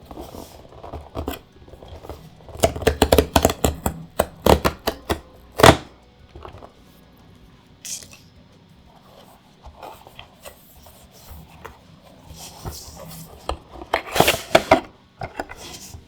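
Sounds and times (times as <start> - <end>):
quick scrapes on packaging: 14.0 - 14.9.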